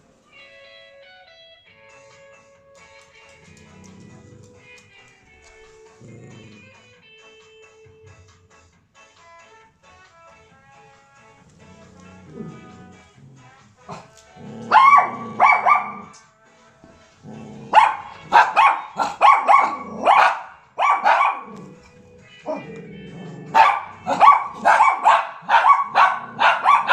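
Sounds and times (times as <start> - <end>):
puppy barking: 13.8 - 16.2, 17.6 - 21.8, 22.4 - 26.9.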